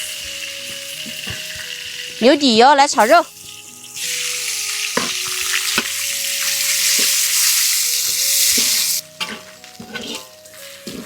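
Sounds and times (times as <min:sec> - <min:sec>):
meat sizzling in hot oil: 0:00.0 - 0:11.0
spatula knocking pan: 0:00.3 - 0:01.8, 0:05.0 - 0:06.0.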